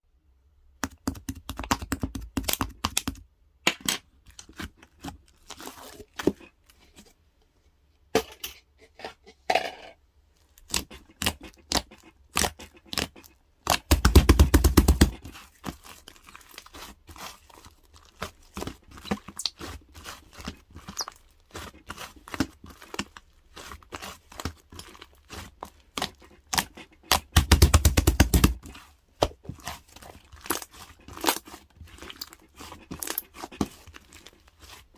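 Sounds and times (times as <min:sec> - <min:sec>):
slime crackling: 0:10.6 - 0:34.9
slime squeezed by hand: 0:15.1 - 0:34.9.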